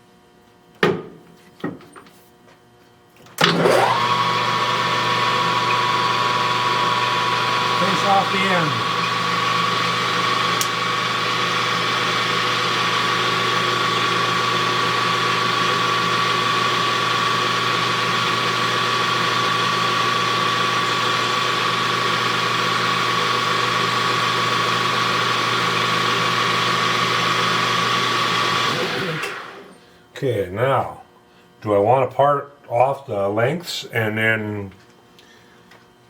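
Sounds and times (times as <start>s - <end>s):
metal lathe whining: 3.4s - 29.8s.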